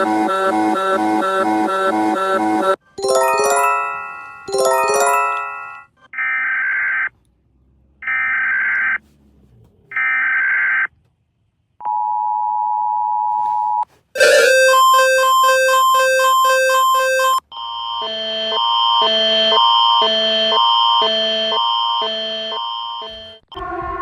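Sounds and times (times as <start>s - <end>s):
two-note attention signal: 14.2s - 17.4s.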